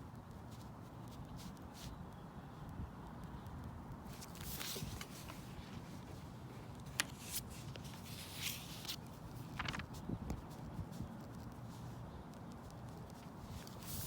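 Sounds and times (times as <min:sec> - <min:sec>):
paper rustling: 0:04.1 - 0:11.0, 0:13.1 - 0:14.0.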